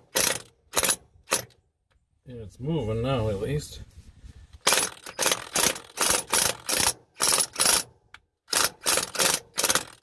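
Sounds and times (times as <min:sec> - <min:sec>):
ratchet wrench clicking: 0:04.6 - 0:07.9, 0:08.5 - 0:10.0.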